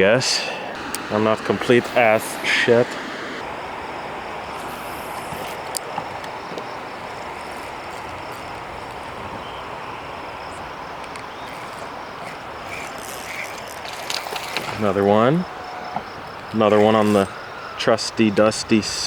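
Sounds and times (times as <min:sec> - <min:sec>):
steady rushing noise: 0:00.0 - 0:12.6
faint high insect drone: 0:00.0 - 0:19.0.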